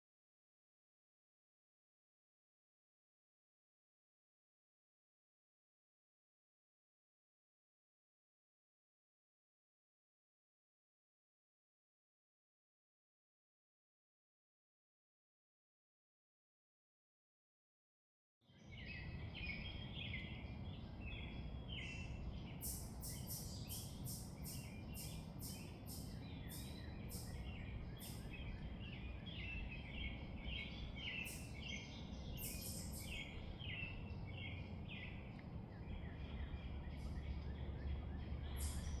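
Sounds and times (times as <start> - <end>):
birds chirping: 18.6 - 39.0
low outdoor rumble: 18.6 - 39.0.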